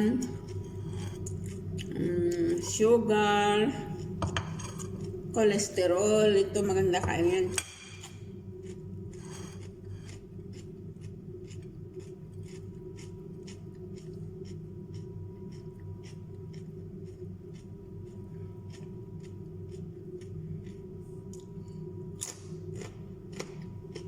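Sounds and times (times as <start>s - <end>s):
steady low hum: 0.0s - 24.0s
raw vegetables being chewed: 8.5s - 24.0s.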